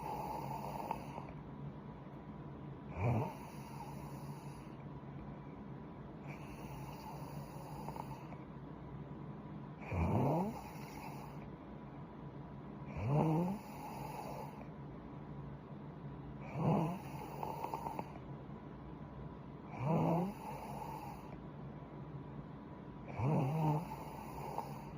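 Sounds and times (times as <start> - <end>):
woman snoring: 0.0 - 1.4, 2.9 - 4.8, 6.3 - 8.3, 9.8 - 11.4, 12.9 - 14.7, 16.4 - 18.2, 19.7 - 21.3, 23.1 - 24.9.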